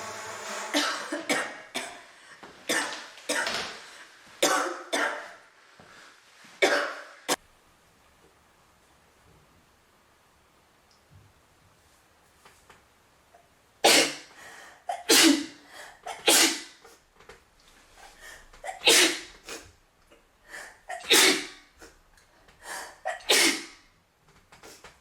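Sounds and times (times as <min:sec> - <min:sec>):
woman breathing: 0:02.0 - 0:02.6, 0:14.3 - 0:14.9, 0:15.6 - 0:16.0, 0:18.0 - 0:18.6, 0:20.4 - 0:20.9, 0:21.8 - 0:23.1
woman sneezing: 0:14.9 - 0:16.8, 0:18.7 - 0:19.4, 0:20.9 - 0:21.7, 0:23.1 - 0:23.8.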